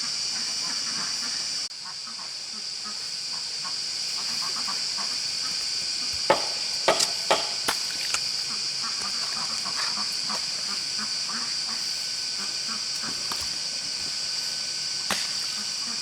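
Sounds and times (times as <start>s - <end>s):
high-pitched insect chorus: 0.0s - 16.0s
sharp knocks: 6.2s - 7.9s.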